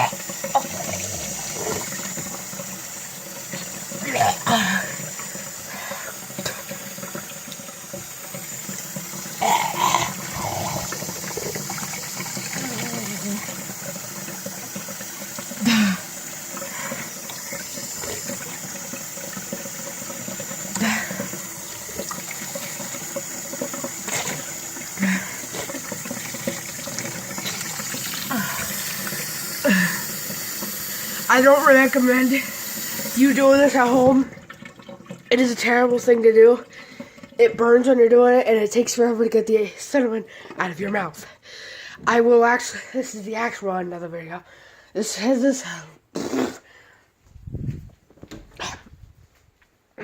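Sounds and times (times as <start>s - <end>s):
tap water running into sink: 0.0s - 41.2s
person coughing: 4.0s - 5.0s.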